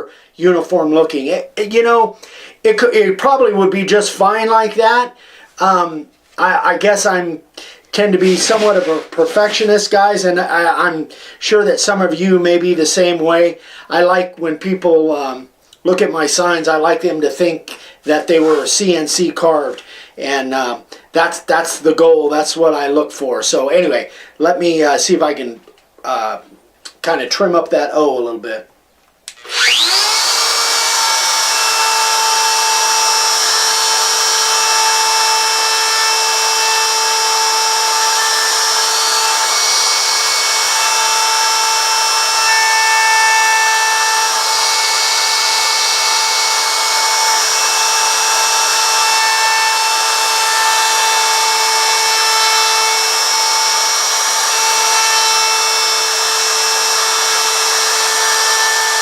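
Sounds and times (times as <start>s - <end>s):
electric router whining: 29.3s - 59.0s.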